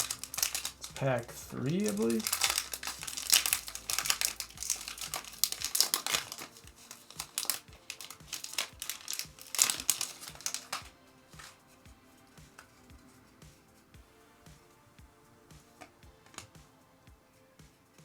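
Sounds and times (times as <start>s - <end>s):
card pack wrapper crinkling and tearing: 0.0s - 11.6s
background music with steady beat: 0.0s - 18.0s.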